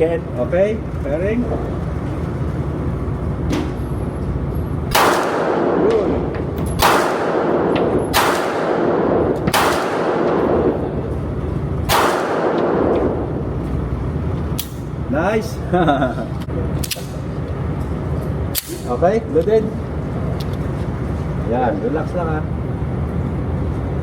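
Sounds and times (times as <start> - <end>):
handgun shots: 4.9 - 6.1, 6.7 - 10.8, 11.9 - 13.2.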